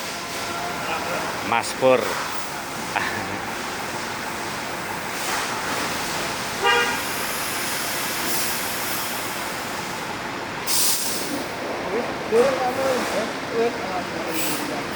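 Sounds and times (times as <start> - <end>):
vehicle running: 0.0 - 14.9
horn toot: 6.6 - 7.2.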